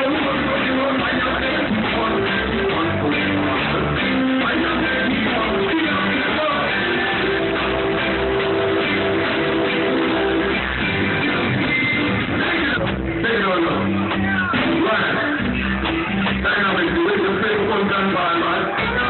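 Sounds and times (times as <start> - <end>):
live reggae band: 0.0 - 19.0.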